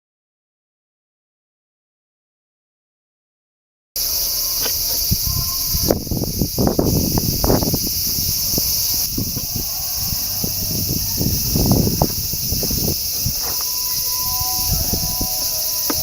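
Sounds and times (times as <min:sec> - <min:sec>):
high-pitched insect chirring: 0:04.0 - 0:16.0.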